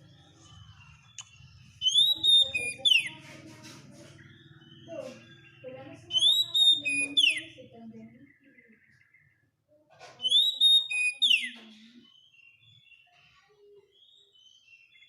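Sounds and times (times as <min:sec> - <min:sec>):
quiet scratchy bird notes: 0:00.0 - 0:15.0
bird singing whistled phrases: 0:01.1 - 0:03.2, 0:04.7 - 0:07.6, 0:10.2 - 0:13.1.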